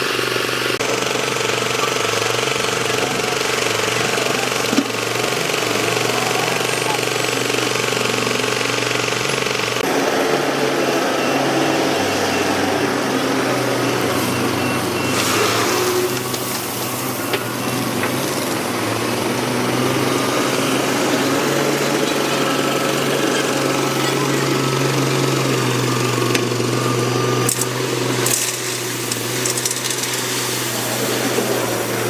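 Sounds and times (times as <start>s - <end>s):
excavator diesel engine: 0.0s - 32.0s.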